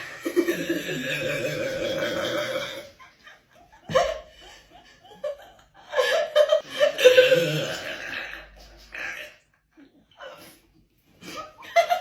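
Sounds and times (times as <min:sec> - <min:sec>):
person burping: 0:00.3 - 0:03.0, 0:06.8 - 0:09.5.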